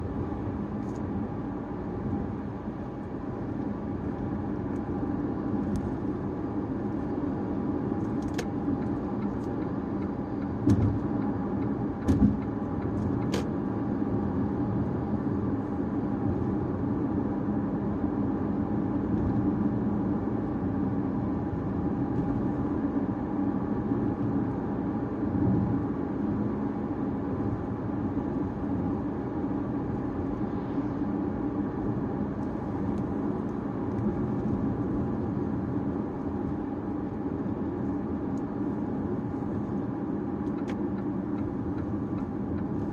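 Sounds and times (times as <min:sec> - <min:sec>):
car engine and road noise: 0:00.0 - 0:42.9.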